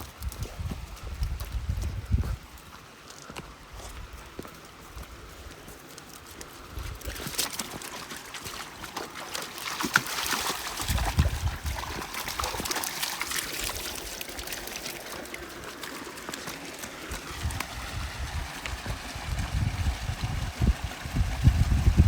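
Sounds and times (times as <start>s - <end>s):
water trickling and splashing: 0.0s - 22.0s
small crackles and clicks: 4.2s - 7.9s.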